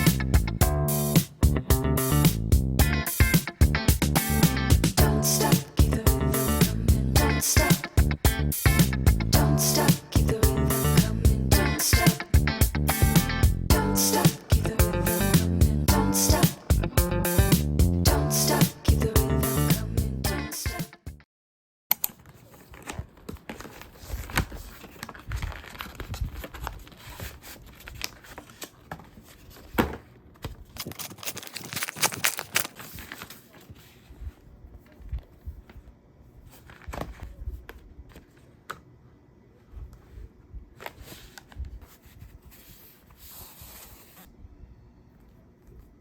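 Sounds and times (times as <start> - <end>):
packaging rustling and crinkling: 22.2 - 38.5
packaging tearing: 30.6 - 33.5.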